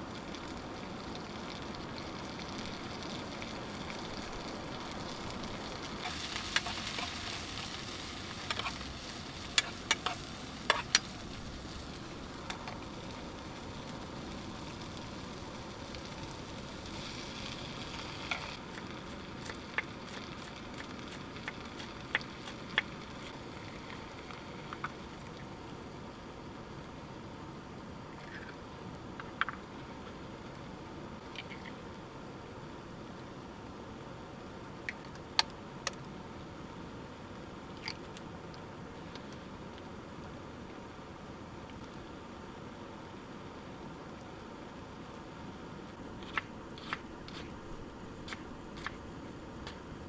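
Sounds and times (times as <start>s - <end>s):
food sizzling in a frying pan: 0.0s - 25.4s.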